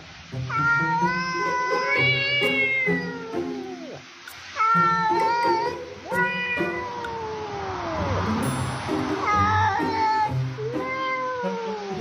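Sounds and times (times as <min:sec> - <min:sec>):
cat meowing: 0:00.5 - 0:08.2, 0:09.2 - 0:12.0
background music: 0:08.0 - 0:12.0.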